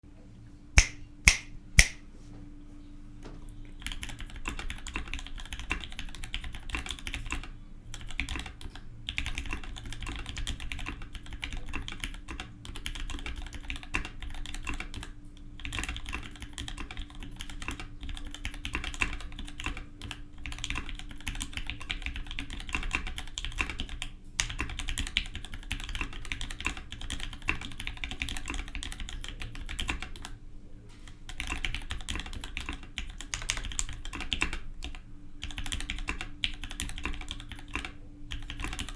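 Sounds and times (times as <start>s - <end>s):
fast typing on mechanical keyboard: 3.8s - 30.4s, 31.2s - 38.9s.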